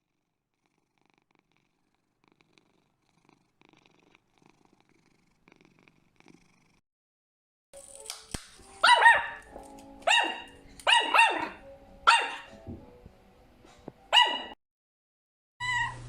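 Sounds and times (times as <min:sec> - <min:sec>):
small dog yapping: 0:08.8 - 0:09.4, 0:10.1 - 0:12.5, 0:14.1 - 0:14.6.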